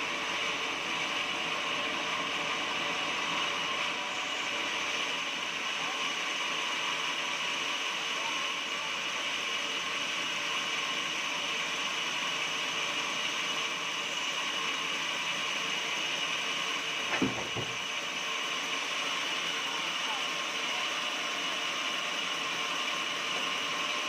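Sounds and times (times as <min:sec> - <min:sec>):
sawmill running: 0:00.0 - 0:24.0
single thump: 0:17.1 - 0:17.8.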